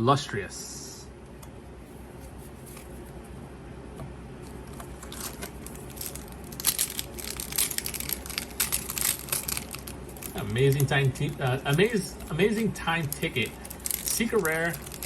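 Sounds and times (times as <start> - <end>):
foil wrapper crinkling and tearing: 4.9 - 15.0.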